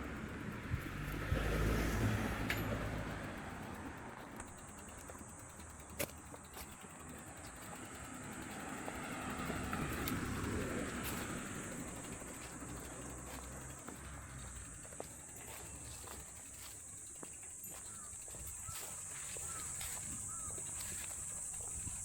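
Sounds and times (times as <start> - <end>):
car passing by: 0.0 - 4.3, 7.7 - 16.7.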